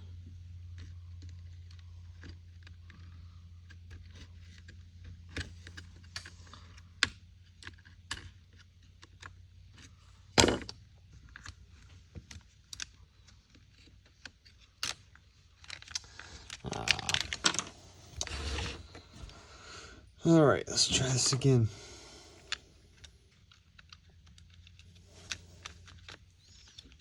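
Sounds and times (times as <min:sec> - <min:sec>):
small plastic and metal clicks: 0:00.7 - 0:09.9, 0:11.2 - 0:17.7, 0:22.5 - 0:27.0.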